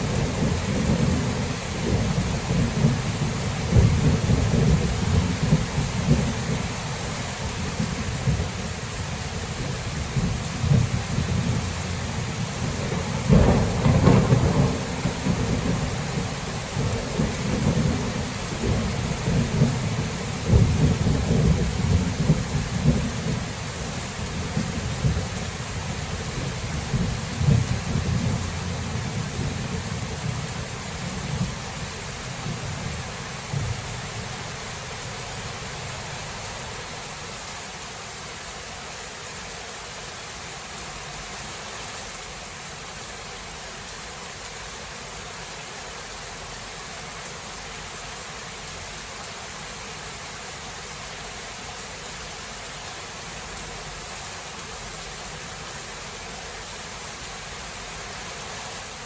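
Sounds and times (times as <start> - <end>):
thunder rumbling: 0.0 - 6.8, 9.6 - 34.8
steady rain hiss: 0.0 - 59.0.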